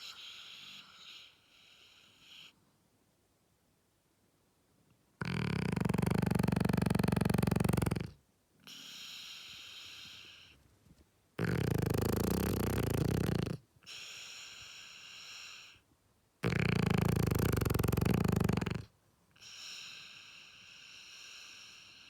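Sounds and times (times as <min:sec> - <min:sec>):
dog snoring loudly: 0:05.2 - 0:08.2, 0:11.4 - 0:13.6, 0:16.4 - 0:18.9.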